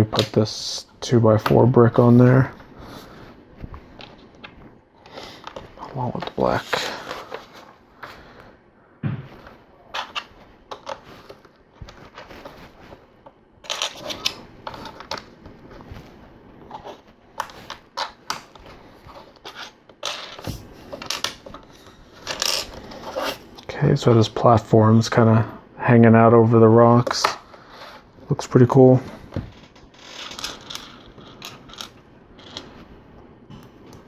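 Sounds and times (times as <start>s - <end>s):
pieces rustling: 2.4s - 8.5s, 9.2s - 23.7s, 28.9s - 32.9s.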